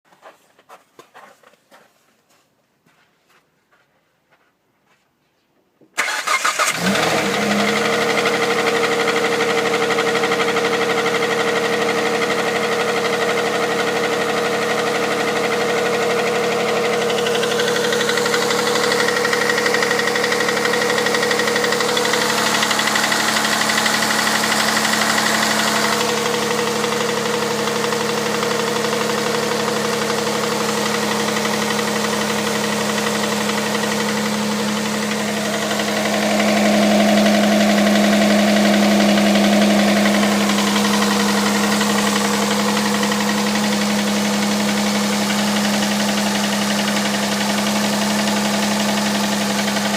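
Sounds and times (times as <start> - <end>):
car engine starting: 6.0 - 49.9.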